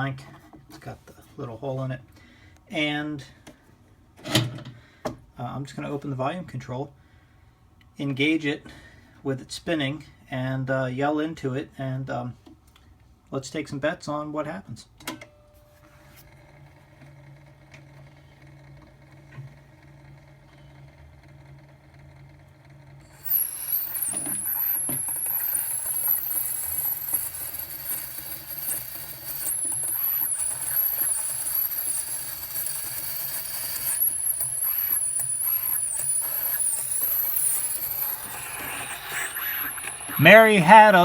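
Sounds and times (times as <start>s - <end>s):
stylus cutting grooves squealing: 23.0s - 41.0s.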